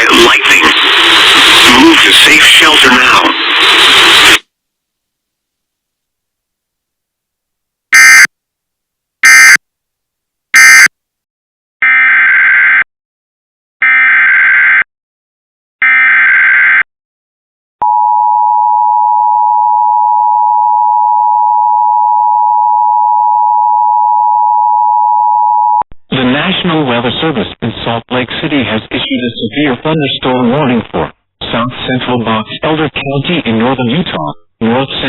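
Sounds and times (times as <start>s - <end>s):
digital data bursts: 0.0s - 4.4s, 8.0s - 8.3s, 10.6s - 10.9s
two-tone attention signal: 8.0s - 8.3s, 9.2s - 9.6s, 10.6s - 10.9s.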